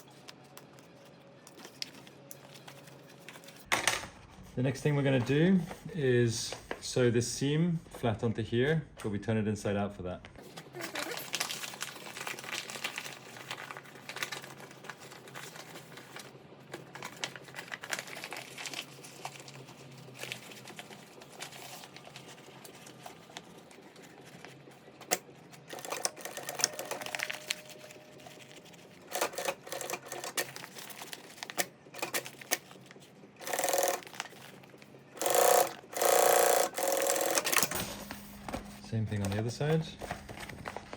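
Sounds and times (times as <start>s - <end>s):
sewing machine stitching: 33.4s - 34.1s, 35.2s - 37.9s.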